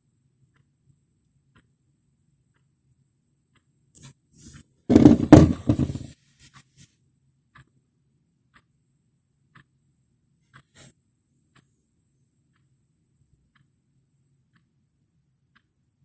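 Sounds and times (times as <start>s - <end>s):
faint alarm clock ticking: 0.0s - 4.7s, 6.5s - 16.0s.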